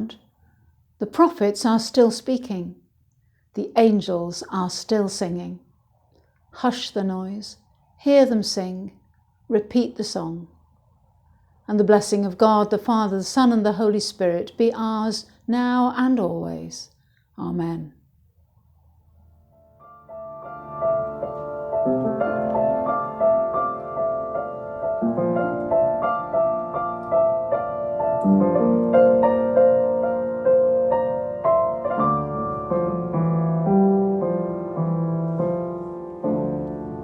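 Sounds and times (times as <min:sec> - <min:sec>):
gentle piano melody: 0:19.8 - 0:37.0.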